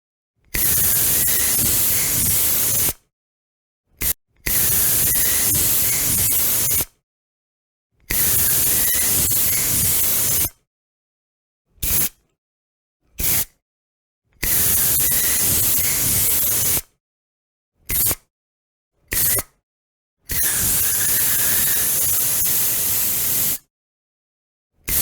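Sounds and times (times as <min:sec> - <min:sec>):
deodorant spray hissing: 0:20.5 - 0:23.6.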